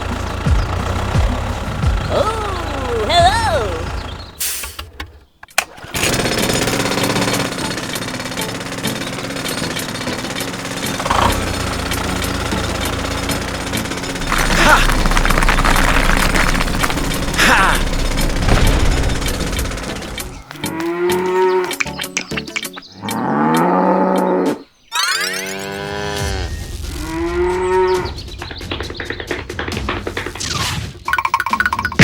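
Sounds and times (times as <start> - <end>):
fast mechanical rattle: 5.6 - 20.5.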